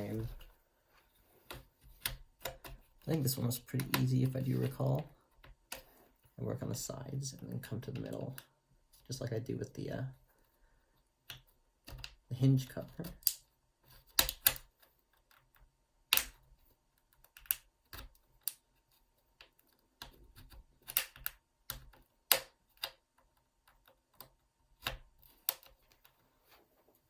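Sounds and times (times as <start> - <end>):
plastic clicks and snaps: 13.0 - 13.5, 19.4 - 26.1.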